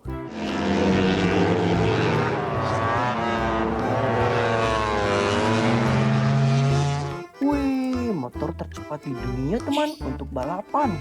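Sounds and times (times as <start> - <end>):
racing motorcycle engine running: 0.2 - 7.2.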